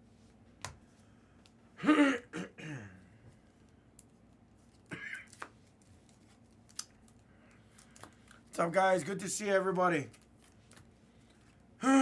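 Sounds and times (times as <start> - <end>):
man clearing his throat: 1.8 - 3.0, 4.9 - 5.3.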